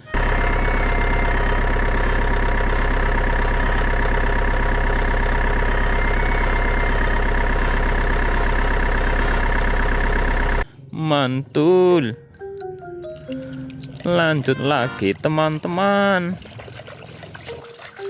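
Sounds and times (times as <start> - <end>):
engine idling: 0.0 - 10.8.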